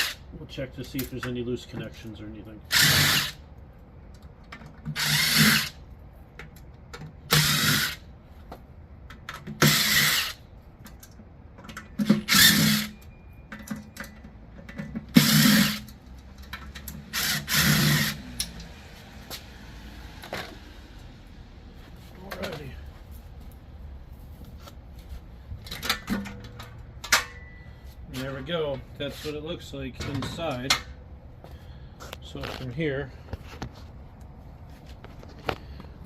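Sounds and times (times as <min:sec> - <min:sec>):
power drill bursts: 0:00.0 - 0:00.2, 0:02.7 - 0:03.4, 0:05.0 - 0:05.8, 0:07.3 - 0:08.1, 0:09.6 - 0:10.4, 0:12.0 - 0:13.0, 0:15.1 - 0:15.9, 0:17.1 - 0:18.4.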